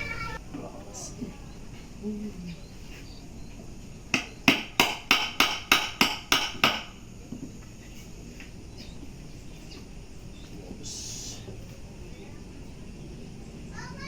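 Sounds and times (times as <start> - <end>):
sharp hammer knocks: 4.1 - 7.0.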